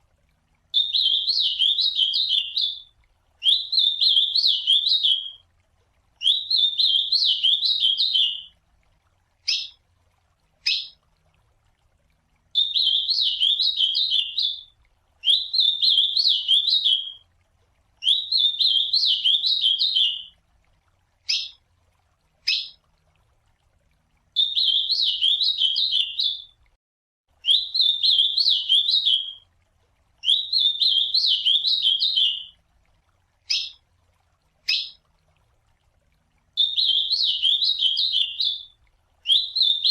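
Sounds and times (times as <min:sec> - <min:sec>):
bird singing warbled phrases: 0:00.8 - 0:05.4, 0:06.2 - 0:08.5, 0:09.5 - 0:09.8, 0:10.6 - 0:11.0, 0:12.6 - 0:17.2, 0:18.0 - 0:20.4, 0:21.3 - 0:21.6, 0:22.5 - 0:22.8, 0:24.4 - 0:26.6, 0:27.4 - 0:29.4, 0:30.2 - 0:32.6, 0:33.5 - 0:33.8, 0:34.7 - 0:35.0, 0:36.6 - 0:39.9.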